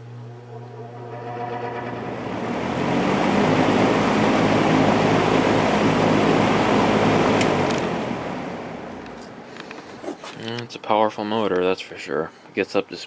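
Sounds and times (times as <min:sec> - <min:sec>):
box fan air rushing: 0:00.0 - 0:10.4.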